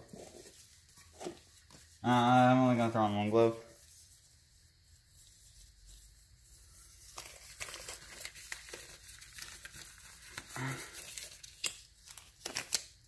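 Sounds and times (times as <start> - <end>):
disposable glove rustling: 2.6 - 13.0.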